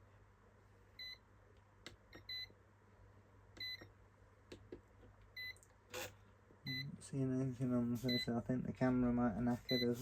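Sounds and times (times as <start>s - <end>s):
faint electronic beeps: 6.6s - 7.0s.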